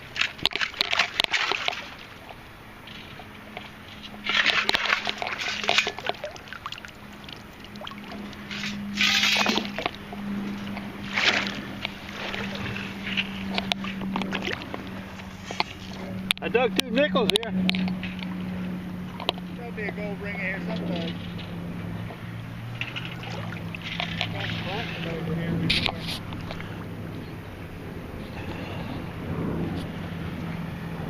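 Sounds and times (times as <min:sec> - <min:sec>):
scoop splashing in wet ground: 0:04.0 - 0:16.2, 0:22.8 - 0:26.8.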